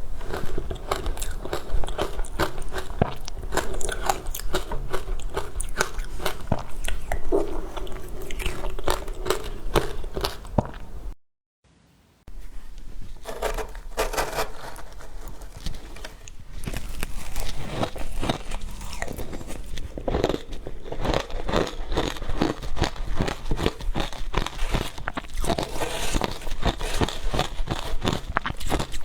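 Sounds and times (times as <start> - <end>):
crunching of frozen ice: 13.2 - 29.0.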